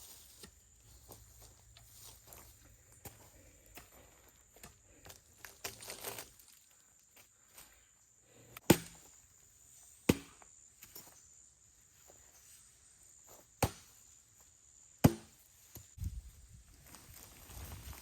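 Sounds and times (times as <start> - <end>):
sharp strikes on wood: 8.6 - 9.0, 10.1 - 10.4, 15.0 - 15.4.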